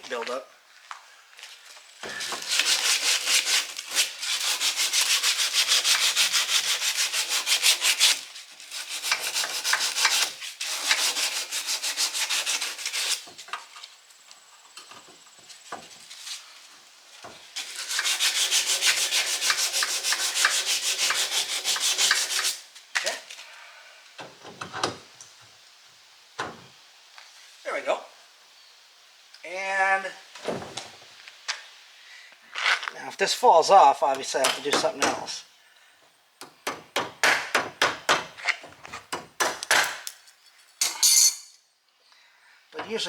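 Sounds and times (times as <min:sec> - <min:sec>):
sanding metal: 0:02.2 - 0:13.2, 0:17.6 - 0:22.6.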